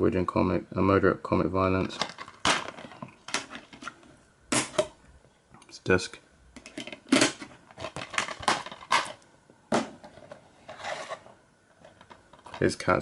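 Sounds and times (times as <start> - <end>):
scraping rustle: 10.1 - 12.9.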